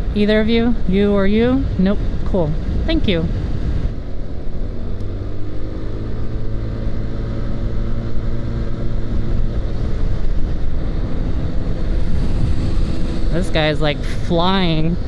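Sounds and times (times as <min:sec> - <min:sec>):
wind rumble on microphone: 0:00.0 - 0:15.0
motorcycle engine pulling away: 0:04.2 - 0:13.5.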